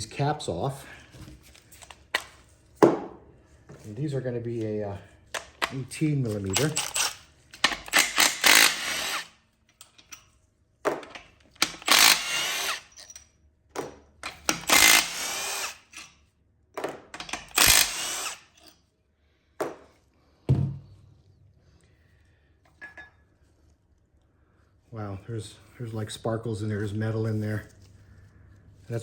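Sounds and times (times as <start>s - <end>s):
power tool spinning bolts: 5.4s - 10.2s, 11.0s - 13.2s, 14.2s - 16.2s, 17.2s - 18.8s.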